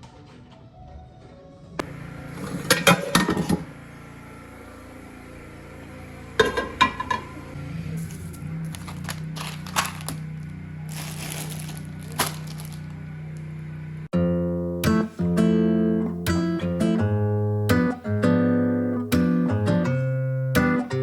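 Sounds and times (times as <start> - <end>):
kitchenware clattering: 2.3 - 3.6, 6.4 - 7.3.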